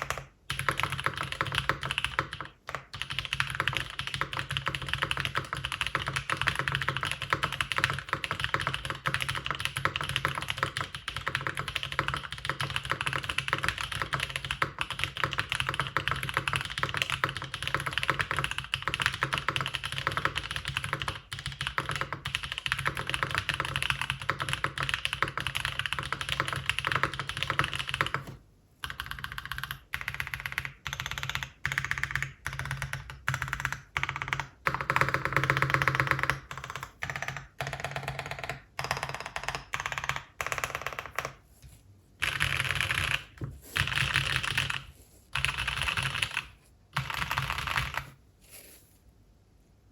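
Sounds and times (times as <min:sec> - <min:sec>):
mechanical keyboard typing: 0:00.0 - 0:41.5, 0:42.2 - 0:48.2.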